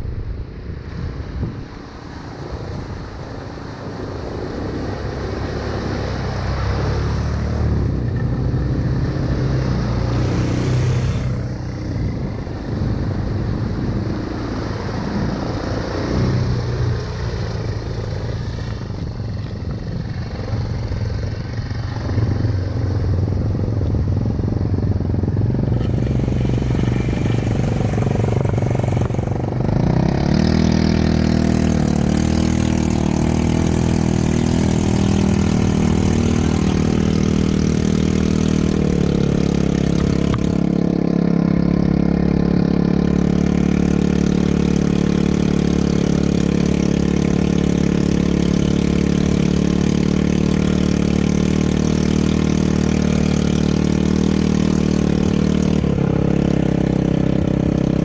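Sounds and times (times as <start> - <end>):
atv engine running: 1.8 - 58.0.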